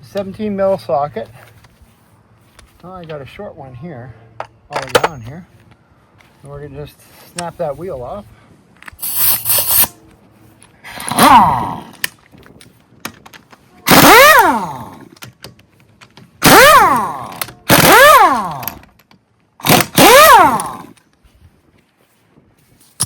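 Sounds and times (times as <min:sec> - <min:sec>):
impact wrench rattling: 0:13.2 - 0:15.6, 0:16.2 - 0:19.0, 0:19.6 - 0:21.0.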